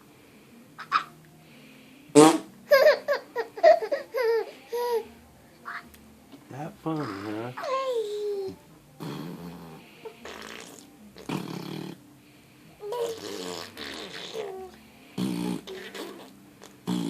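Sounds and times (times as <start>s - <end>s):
mouth fart sounds: 2.2s - 2.5s, 9.0s - 12.0s, 12.9s - 17.0s
baby's voice: 7.0s - 8.6s.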